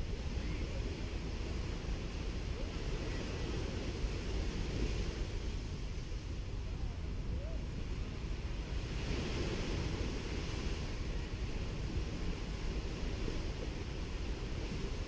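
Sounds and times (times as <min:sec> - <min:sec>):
waves washing onto beach: 0:00.0 - 0:15.0
wind rumble on microphone: 0:00.0 - 0:15.0.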